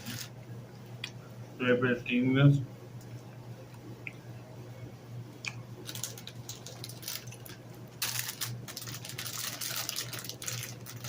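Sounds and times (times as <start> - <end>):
plastic packaging crinkling: 0.0 - 0.4, 5.8 - 11.0
faint steady hum: 0.0 - 11.0.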